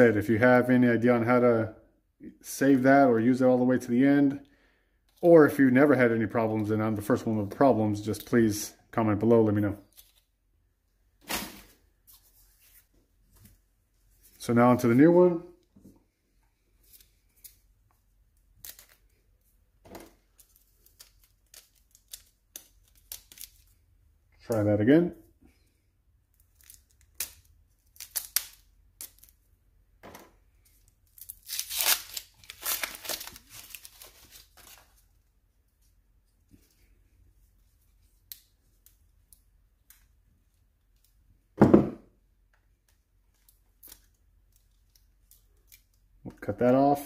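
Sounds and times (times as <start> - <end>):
wrapping rustling: 30.5 - 41.2.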